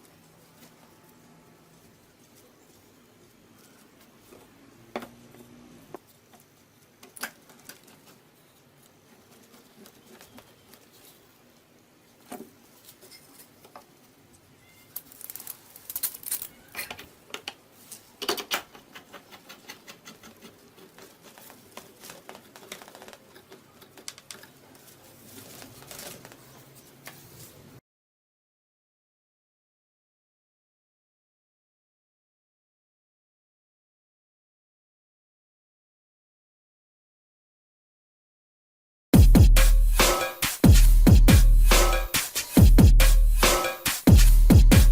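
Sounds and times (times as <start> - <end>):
wooden pieces and tools clicking: 14.9 - 26.5.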